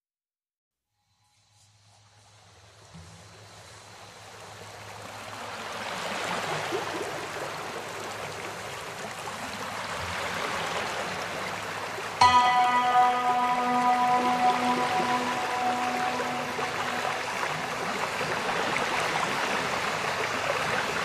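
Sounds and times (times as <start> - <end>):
music with held notes: 12.2 - 18.6.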